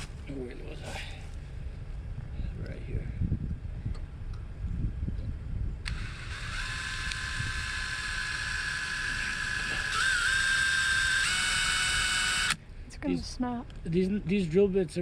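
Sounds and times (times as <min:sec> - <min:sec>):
electric drill boring into metal: 0:05.8 - 0:12.6.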